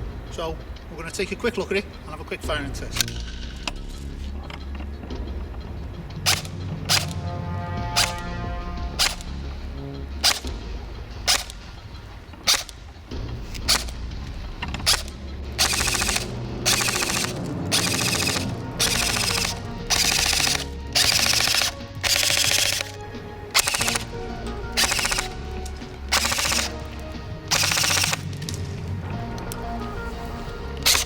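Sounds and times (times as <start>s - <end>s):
airsoft rifle full-auto bursts: 6.3s - 7.2s, 7.9s - 8.2s, 8.9s - 9.4s, 10.2s - 10.5s, 11.3s - 11.6s, 12.5s - 12.8s, 13.5s - 14.0s, 14.8s - 28.6s, 30.8s - 31.0s.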